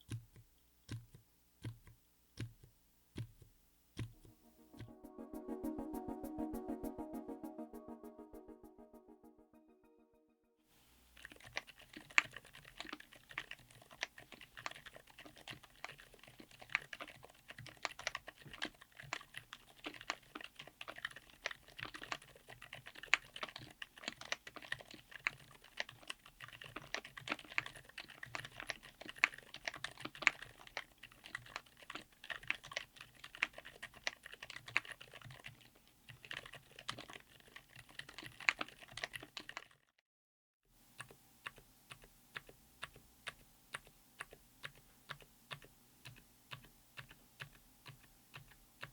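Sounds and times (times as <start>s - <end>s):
typing on mechanical keyboard: 11.2s - 39.8s, 41.0s - 48.9s.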